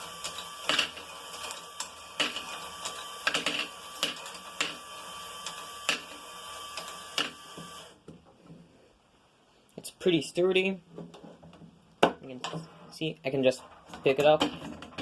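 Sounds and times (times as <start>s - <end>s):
motor and gear whir: 0.0s - 8.0s.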